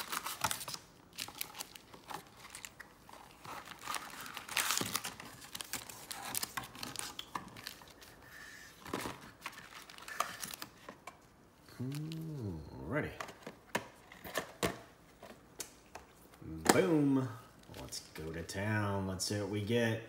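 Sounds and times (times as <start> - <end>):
plastic wrapping crinkling: 0.0 - 12.4.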